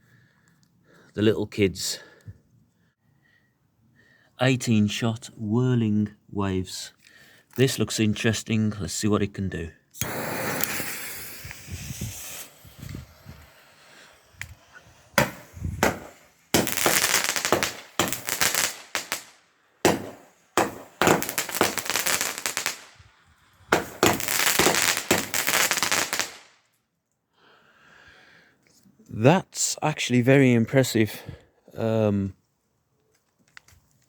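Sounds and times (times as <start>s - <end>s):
firework launch bangs: 10.0s - 23.0s, 23.7s - 26.5s
fireworks crackling: 10.0s - 26.6s.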